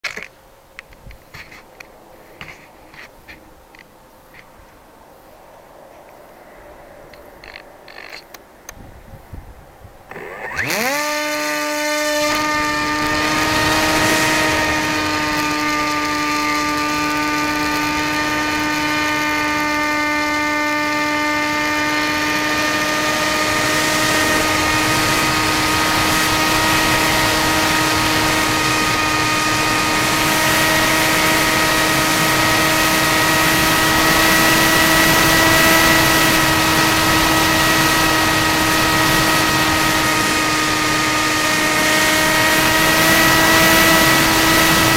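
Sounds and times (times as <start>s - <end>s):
model airplane motor whine: 10.0s - 44.9s.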